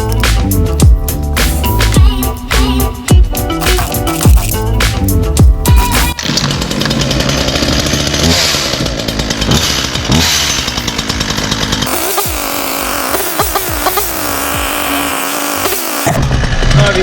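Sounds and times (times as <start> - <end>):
chainsaw engine revving: 3.6 - 4.7, 5.8 - 16.6.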